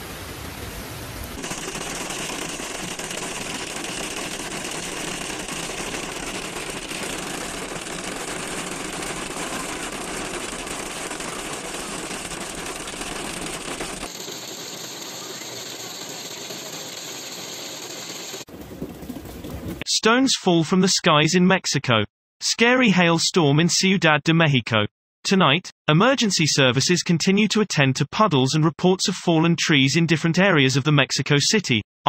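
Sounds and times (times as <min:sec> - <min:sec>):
hail rattling: 0:01.4 - 0:19.8.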